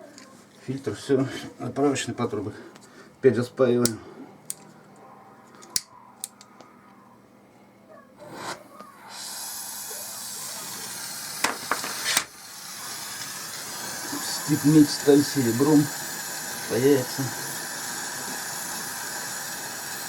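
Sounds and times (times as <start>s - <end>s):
gas torch burning with hiss: 8.3s - 20.0s.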